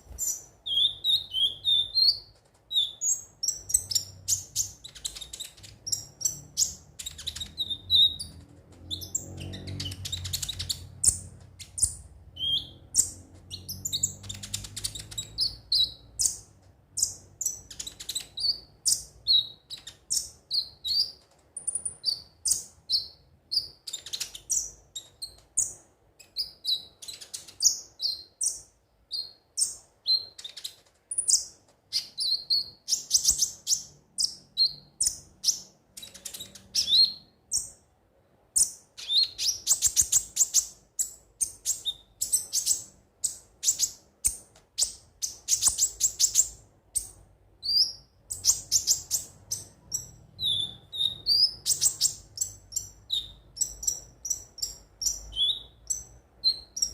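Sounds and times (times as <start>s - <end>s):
sunbird singing chirps and trills: 0.2s - 16.4s, 47.6s - 56.9s.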